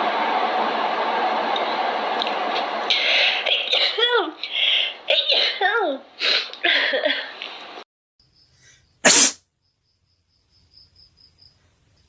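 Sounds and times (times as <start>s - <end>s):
girl sneezing: 9.0s - 9.4s.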